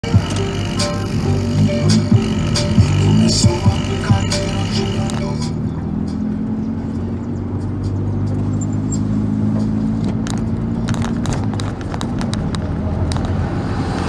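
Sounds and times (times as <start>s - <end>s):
car engine running: 0.0s - 14.0s.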